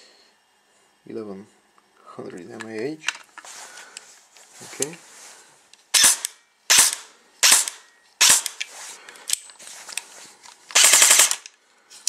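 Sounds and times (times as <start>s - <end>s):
electric airsoft gun firing bursts: 5.9s - 8.6s, 10.7s - 11.5s.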